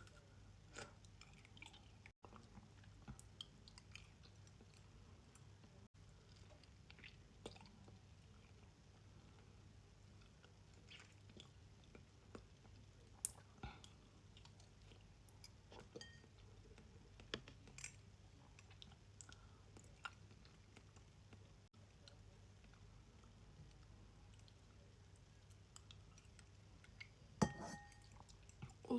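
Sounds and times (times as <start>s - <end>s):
faint steady hum: 0.0s - 28.9s
wet chewing and lip-smacking: 6.1s - 8.7s, 18.4s - 27.2s.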